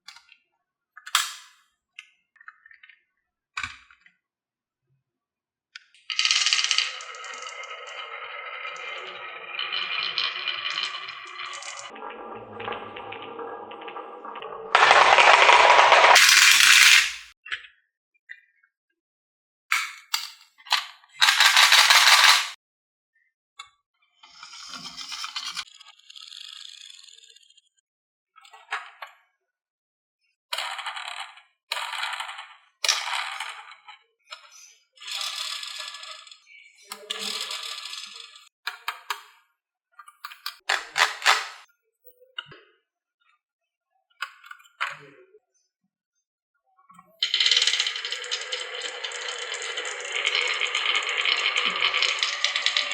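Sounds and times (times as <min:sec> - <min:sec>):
marbles rattling down wooden track: 0:06.1 - 0:17.3, 0:21.2 - 0:22.6, 0:35.2 - 0:36.4, 0:37.2 - 0:38.4, 0:47.2 - 0:52.9.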